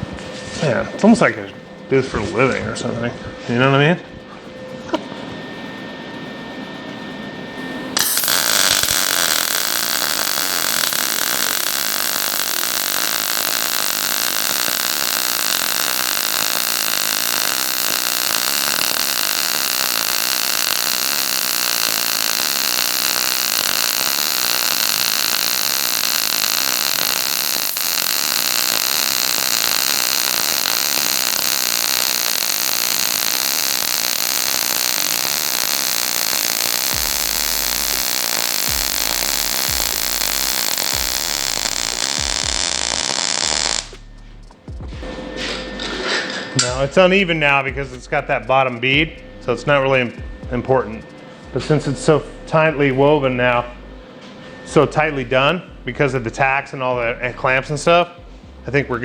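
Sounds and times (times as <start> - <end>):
welding arc crackling hiss: 8.0 - 51.6.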